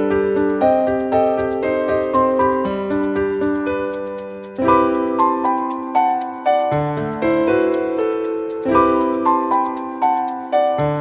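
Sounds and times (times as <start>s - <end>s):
gentle keyboard melody: 0.0s - 11.0s
light ticking beat: 0.0s - 11.0s.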